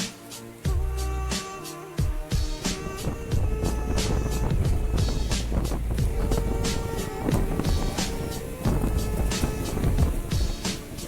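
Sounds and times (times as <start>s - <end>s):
low bass: 0.7s - 1.4s, 2.6s - 10.5s.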